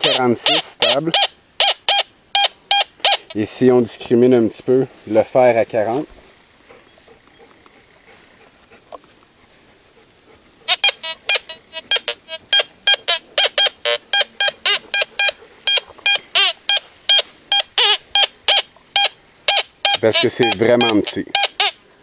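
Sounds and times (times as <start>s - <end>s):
metal detector short beeps: 0.0s - 3.4s, 10.7s - 21.8s.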